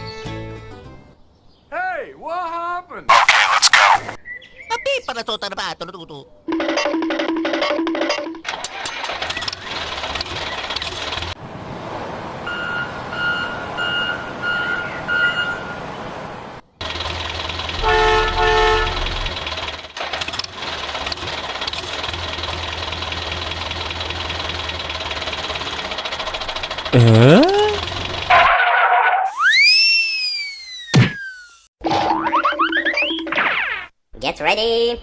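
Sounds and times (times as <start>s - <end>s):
engine hum with high whine: 9.0s - 12.7s, 16.8s - 28.5s
reversing alarm beeps: 12.5s - 15.6s
horn honk: 17.8s - 19.3s.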